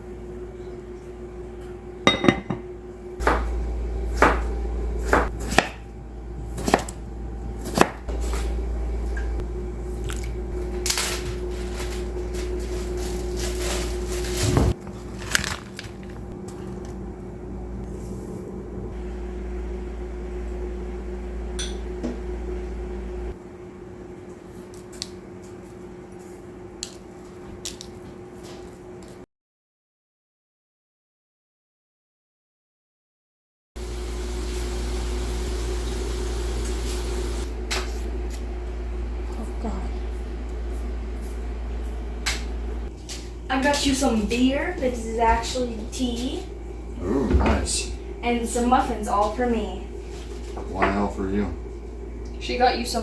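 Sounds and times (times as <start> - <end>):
low steady hum: 0.0 - 28.5, 33.8 - 53.0
dishes and utensils clinking: 2.1 - 2.7.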